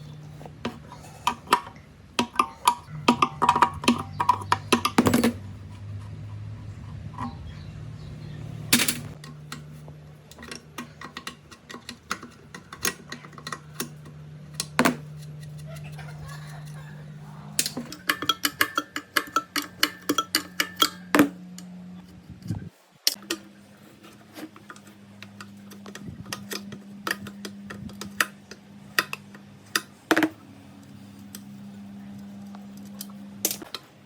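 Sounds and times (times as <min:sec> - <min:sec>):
low steady hum: 0:00.0 - 0:34.0
tools clicking on metal: 0:10.3 - 0:16.8, 0:17.6 - 0:21.7.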